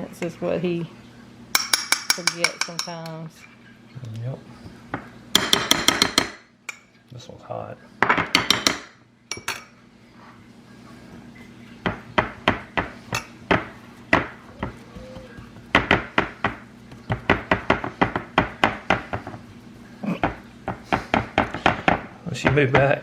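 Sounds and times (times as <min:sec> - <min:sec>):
utensil clinking against dish: 0:01.5 - 0:03.2.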